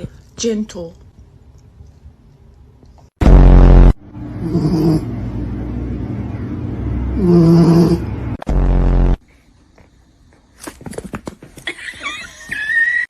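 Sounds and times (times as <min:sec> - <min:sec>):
dog grumbling: 0:04.4 - 0:05.1.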